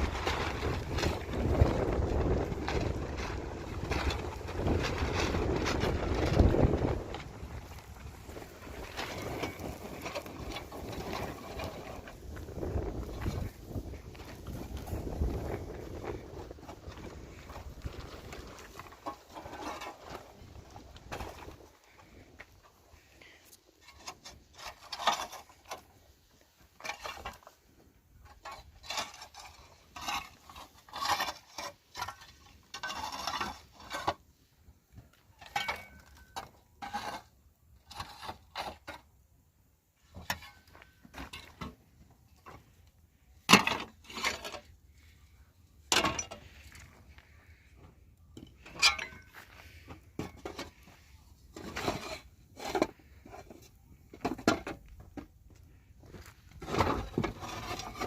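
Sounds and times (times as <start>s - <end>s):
hard objects clattering: 0.0s - 23.1s, 48.4s - 55.3s.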